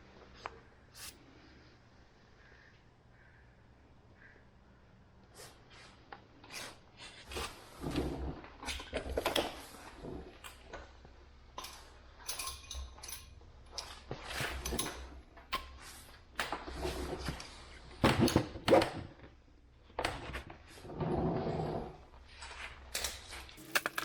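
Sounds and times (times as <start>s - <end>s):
metal tools clinking and rattling: 11.6s - 13.3s, 23.6s - 24.0s.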